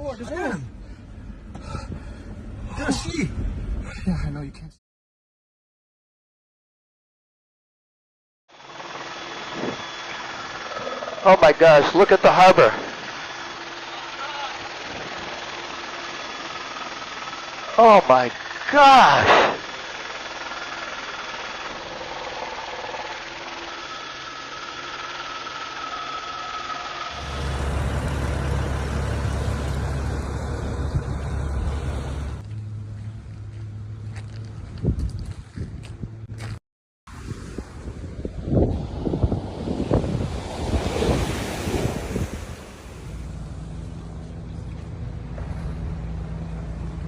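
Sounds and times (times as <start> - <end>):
car interior road noise: 27.1 - 34.9
wind buffeting microphone: 34.6 - 36.3, 37.1 - 43.4
low rumble: 37.1 - 47.0
low even hum: 41.6 - 47.0.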